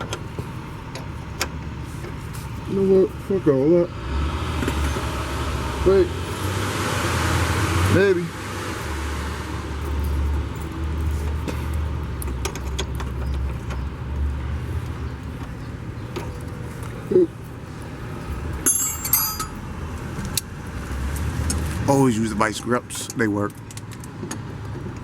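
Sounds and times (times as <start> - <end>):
bright metallic jangle: 18.6 - 19.7
hand tools clinking on metal: 18.6 - 19.7.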